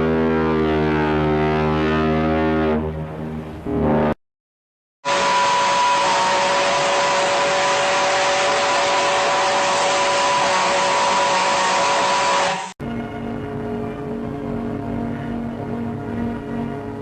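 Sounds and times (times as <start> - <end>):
ship's steam whistle blast: 5.0 - 12.8.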